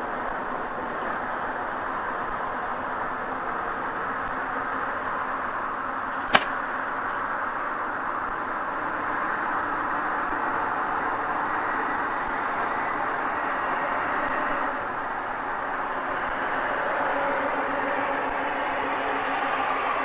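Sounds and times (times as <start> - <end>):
sharp crack: 6.1 - 6.7.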